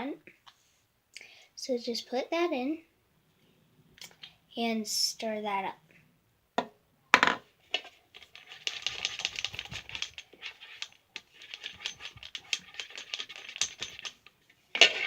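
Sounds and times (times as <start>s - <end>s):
utensil stirring in container: 7.8s - 15.0s.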